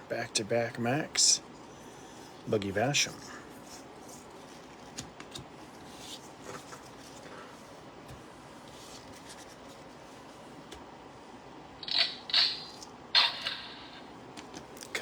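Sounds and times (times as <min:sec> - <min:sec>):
cards rustling: 0:02.3 - 0:10.8.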